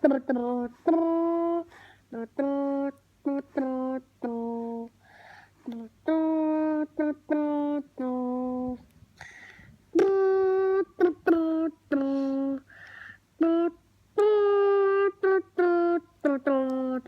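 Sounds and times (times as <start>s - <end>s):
person humming a tune: 0.0s - 5.0s, 5.6s - 17.0s
breaths: 1.7s - 2.1s, 5.0s - 5.6s, 9.2s - 9.8s, 12.7s - 13.3s.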